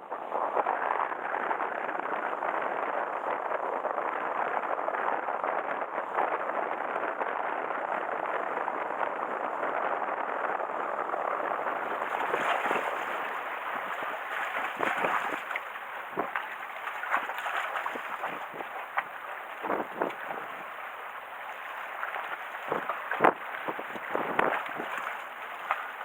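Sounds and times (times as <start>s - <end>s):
waves: 0.0s - 26.0s
wind buffeting microphone: 0.0s - 26.0s
water lapping among concrete blocks: 11.3s - 26.0s
small water splashes: 11.4s - 26.0s.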